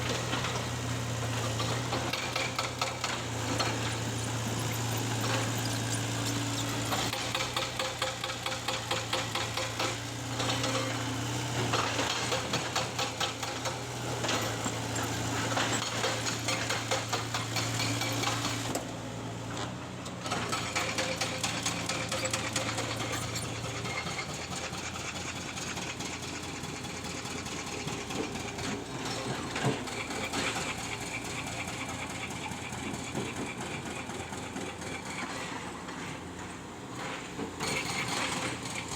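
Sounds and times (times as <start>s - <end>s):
diesel engine hum: 0.0s - 26.5s.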